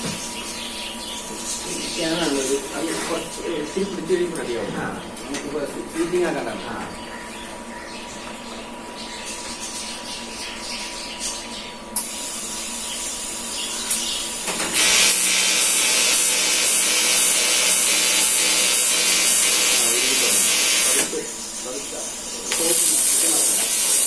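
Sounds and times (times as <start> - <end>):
welding arc buzzing hiss: 12.0 - 24.0.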